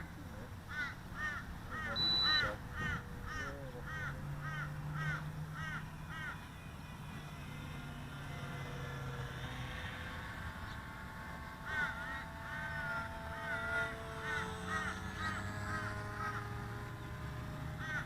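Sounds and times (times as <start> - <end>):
low hum: 0.0 - 18.0
crow cawing: 0.7 - 2.0, 2.7 - 6.4, 11.6 - 16.6, 17.7 - 18.0.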